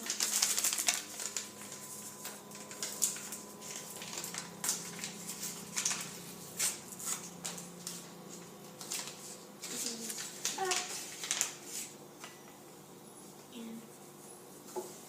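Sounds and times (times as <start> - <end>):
packet crinkling and rustling: 0.0 - 12.0.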